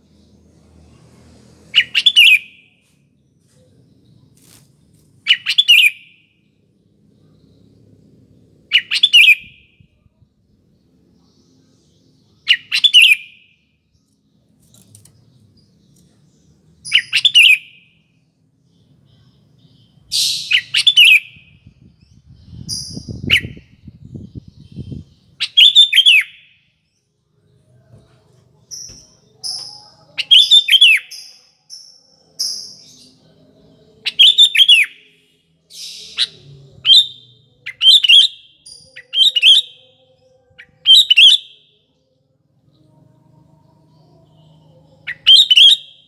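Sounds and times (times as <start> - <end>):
low rumble: 21.4 - 25.4
bird singing whistled phrases: 24.6 - 26.5, 29.5 - 31.2, 35.8 - 39.8, 40.6 - 41.7, 45.1 - 46.0.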